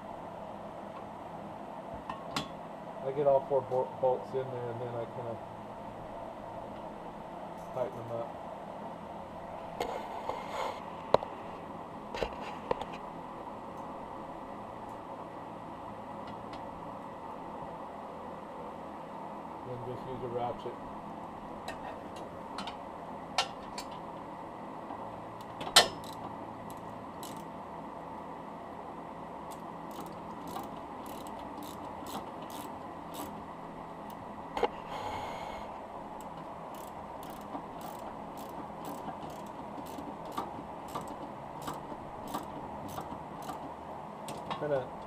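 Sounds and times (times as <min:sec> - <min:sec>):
hand ratchet clicking: 0:25.4 - 0:27.5, 0:29.5 - 0:33.4, 0:36.2 - 0:43.7.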